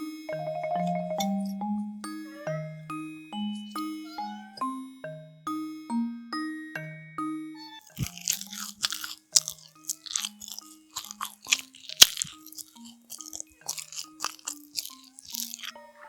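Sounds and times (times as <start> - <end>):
light background music: 0.0 - 16.0
crisp biting and chewing: 7.8 - 16.0.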